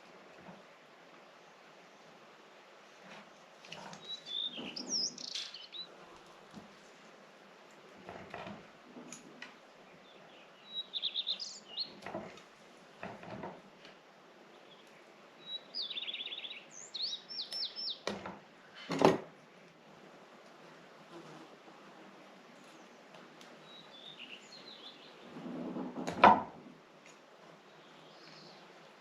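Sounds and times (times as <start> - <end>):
songbird trilling: 4.0 - 5.9, 10.6 - 12.0, 15.4 - 18.1.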